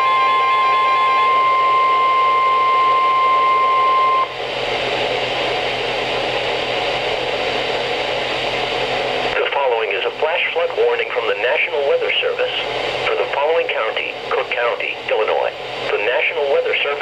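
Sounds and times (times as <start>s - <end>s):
emergency alert tone: 0.0s - 4.3s
radio hiss: 9.3s - 17.0s.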